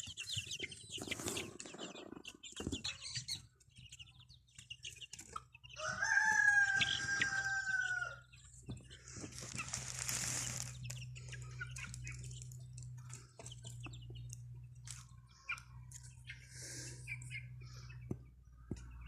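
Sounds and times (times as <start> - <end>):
rooster crowing: 5.8 - 8.3.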